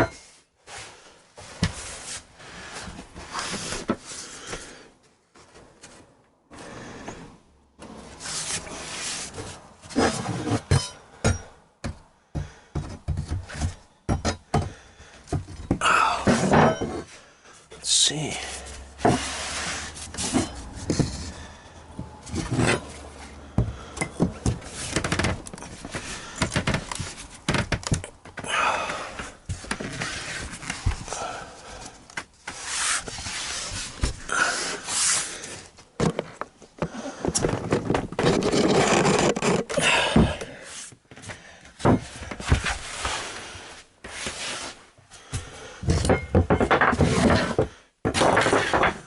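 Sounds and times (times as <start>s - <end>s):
board scraping on board: 8.0s - 10.7s, 19.0s - 21.6s, 29.6s - 31.0s, 32.4s - 35.5s, 36.8s - 40.9s, 46.8s - 49.0s
knocks and thuds of boards: 45.4s - 49.0s.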